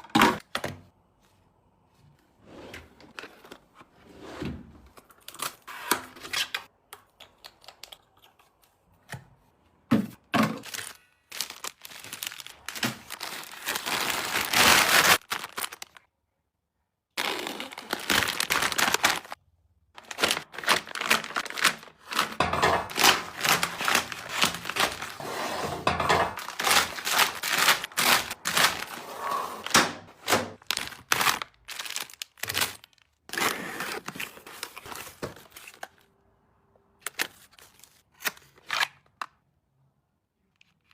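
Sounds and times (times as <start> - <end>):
packaging crinkling and rustling: 10.6 - 16.1, 17.2 - 19.4, 20.0 - 25.2, 26.3 - 29.0, 30.5 - 36.1.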